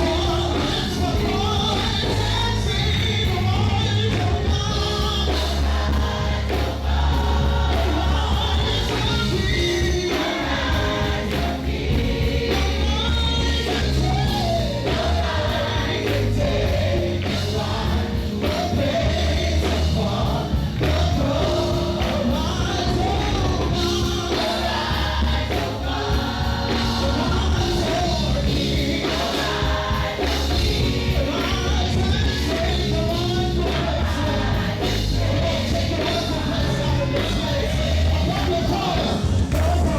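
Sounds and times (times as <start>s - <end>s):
band with heavy bass: 0.0s - 39.9s
group of singers: 0.0s - 39.9s.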